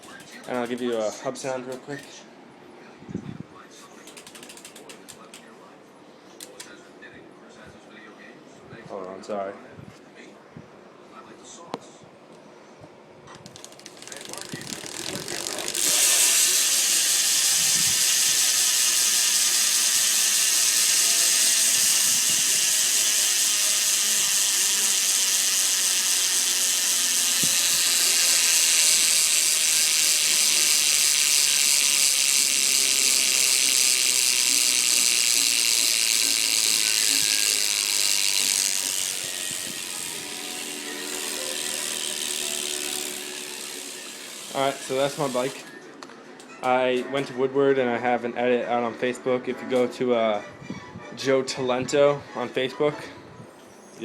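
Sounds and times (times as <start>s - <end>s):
bicycle hub ratcheting buzz: 0.0s - 1.2s, 4.1s - 5.4s, 13.4s - 45.7s.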